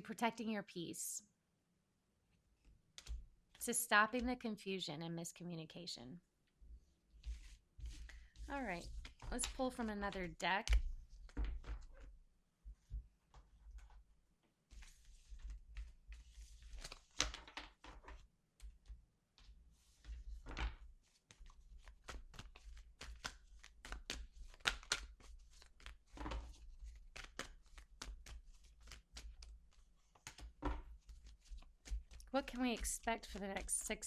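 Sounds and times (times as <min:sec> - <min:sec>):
cards shuffled by hand: 0:02.6 - 0:03.6, 0:07.2 - 0:12.2, 0:12.8 - 0:14.0, 0:14.7 - 0:34.0.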